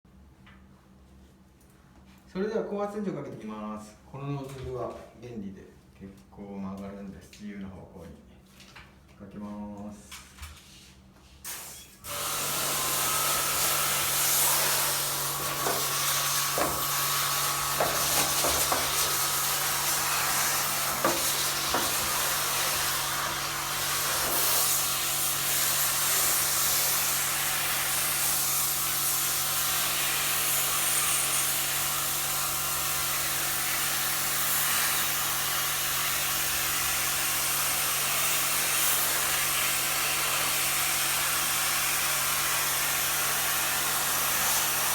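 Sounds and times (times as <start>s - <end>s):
water jet hissing: 11.4s - 44.9s
pressure washer pump humming: 11.5s - 44.9s.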